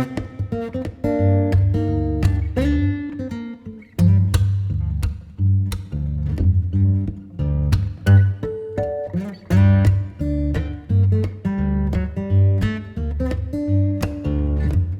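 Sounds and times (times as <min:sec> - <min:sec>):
acoustic guitar tune: 0:00.0 - 0:14.9
bass line: 0:04.0 - 0:08.4, 0:09.5 - 0:14.9.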